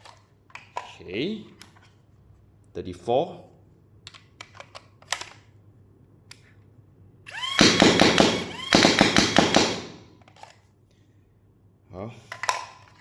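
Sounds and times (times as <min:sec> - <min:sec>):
dart blaster motor whine: 0:07.3 - 0:10.0
darts firing in bursts: 0:07.6 - 0:10.1.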